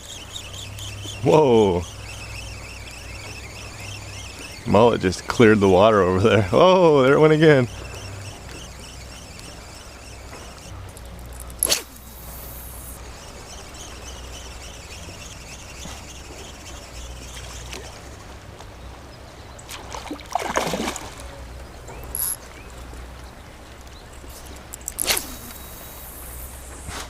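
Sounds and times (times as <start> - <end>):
seawater trickling and splashing: 0.0 - 27.0
sharp water splash: 19.7 - 21.3.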